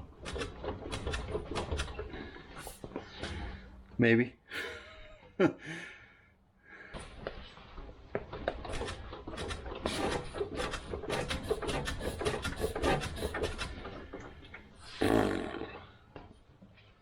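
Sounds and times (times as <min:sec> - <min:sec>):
tools clicking and knocking on parts: 0:00.1 - 0:02.1, 0:08.1 - 0:14.6
loud rasping scrape: 0:08.8 - 0:14.0.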